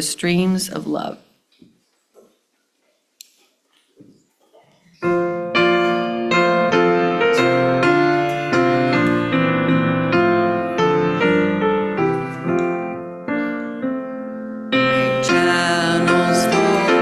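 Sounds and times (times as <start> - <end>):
piano playing hymn chords: 5.0 - 17.0.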